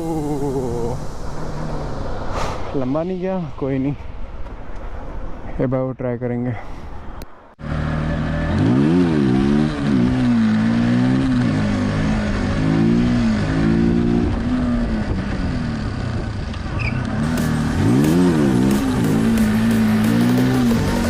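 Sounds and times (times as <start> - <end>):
motorcycle engine revving: 7.6 - 21.0.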